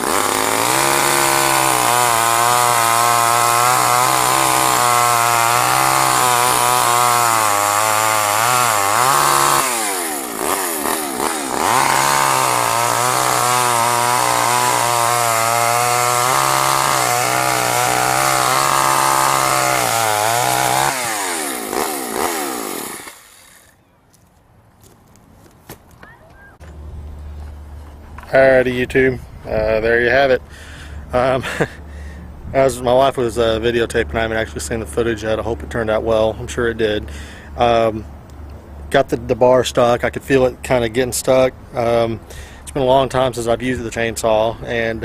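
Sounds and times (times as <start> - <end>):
chainsaw cutting wood: 0.0 - 25.0.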